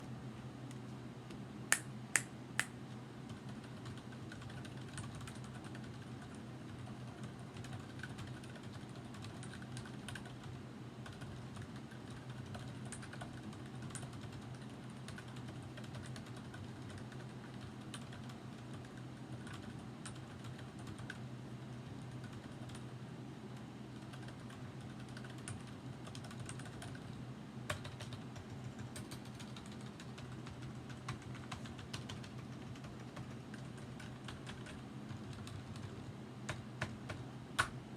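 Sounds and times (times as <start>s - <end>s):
typing on mechanical keyboard: 3.3s - 21.2s, 24.1s - 37.7s
sharp keyboard clacks: 3.4s - 10.5s, 24.1s - 37.8s.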